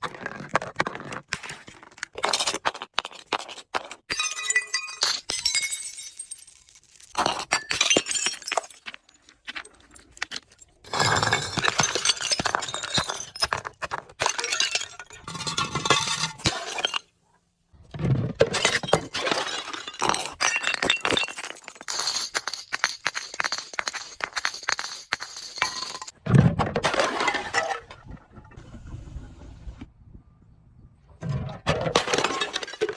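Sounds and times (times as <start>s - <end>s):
glass bottles shattering: 4.1s - 17.1s, 18.4s - 26.2s, 26.8s - 28.1s, 31.7s - 32.9s.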